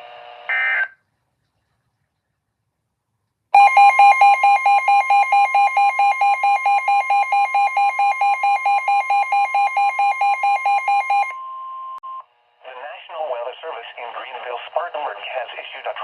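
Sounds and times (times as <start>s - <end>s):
loud alarm beeping: 3.6s - 12.2s
steady high alarm tone: 3.6s - 12.2s.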